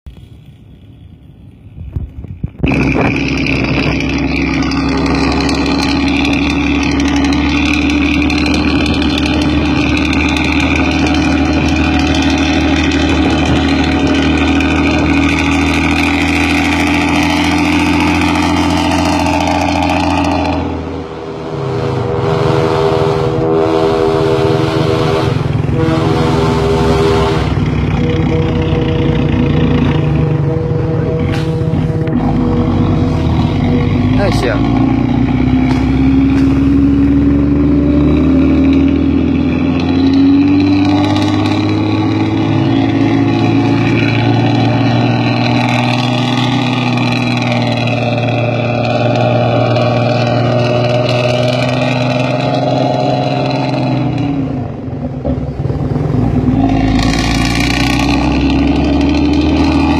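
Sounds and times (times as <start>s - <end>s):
diesel engine deep growl: 0.0s - 59.9s
pitched multi-note horn: 4.4s - 35.0s.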